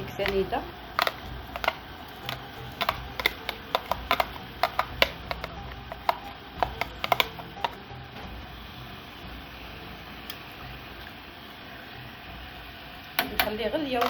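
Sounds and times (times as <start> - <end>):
utensils clicking against pot or glass: 0.2 - 7.8.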